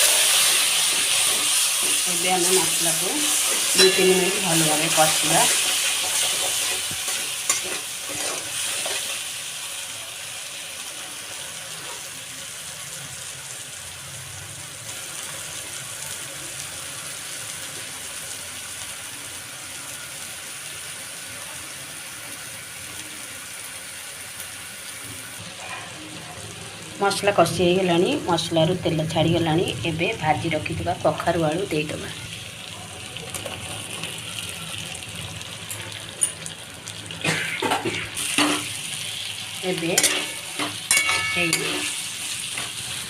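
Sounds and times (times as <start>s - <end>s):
paste sizzling in oil: 0.0s - 13.9s, 31.1s - 43.0s.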